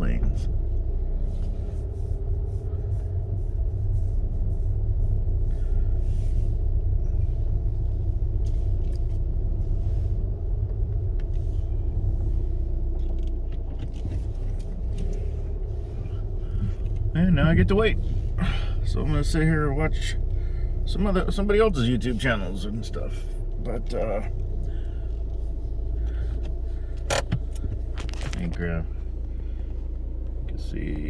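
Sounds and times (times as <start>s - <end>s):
car engine and road rumble: 0.0s - 31.0s
steady hum: 24.0s - 31.0s.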